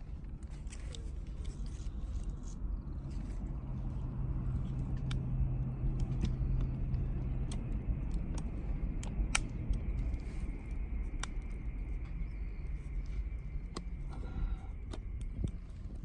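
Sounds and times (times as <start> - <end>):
low rumble: 0.0 - 16.0
low steady hum: 0.0 - 16.0
wood fire crackling: 3.8 - 16.0.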